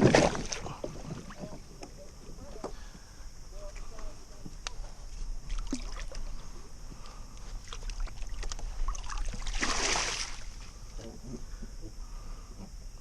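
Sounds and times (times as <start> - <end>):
water splash: 0.0 - 1.4, 7.7 - 10.6.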